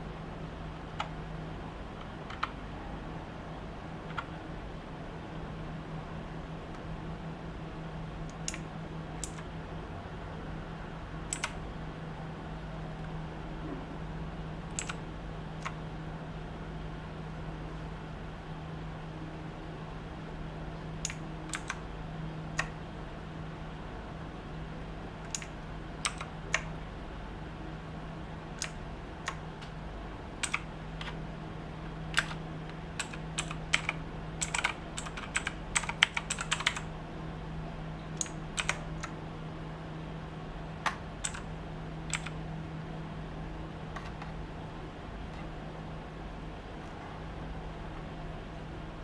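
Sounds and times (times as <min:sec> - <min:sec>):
steady low hum: 0:00.0 - 0:49.0
mechanical keyboard clicks: 0:08.3 - 0:09.5, 0:11.3 - 0:11.6, 0:14.7 - 0:15.0, 0:21.0 - 0:21.8, 0:25.2 - 0:26.8, 0:28.6 - 0:29.4, 0:30.4 - 0:31.2, 0:32.1 - 0:32.4, 0:33.0 - 0:36.9, 0:38.2 - 0:39.2, 0:40.8 - 0:41.5, 0:42.1 - 0:42.4.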